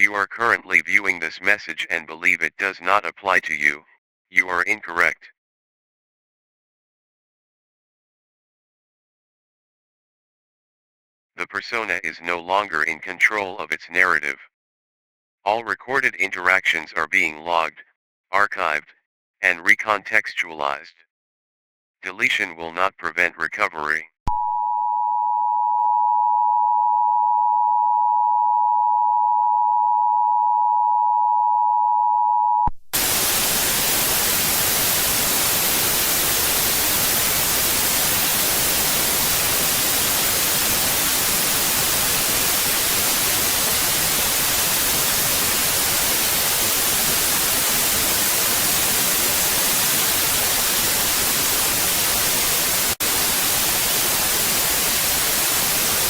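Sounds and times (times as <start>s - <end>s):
white-noise static: 33.0s - 56.0s.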